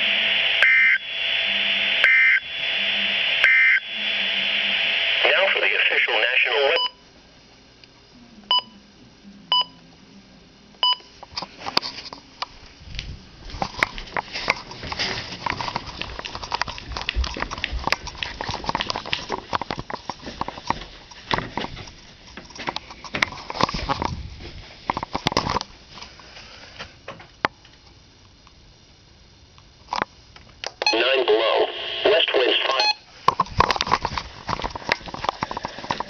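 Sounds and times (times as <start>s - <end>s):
rustling and clicking: 13.0s - 26.9s.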